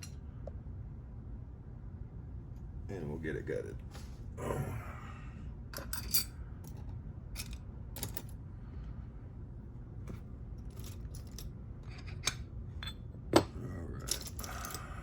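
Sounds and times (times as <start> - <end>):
metal lock parts clicking: 10.7 - 14.9.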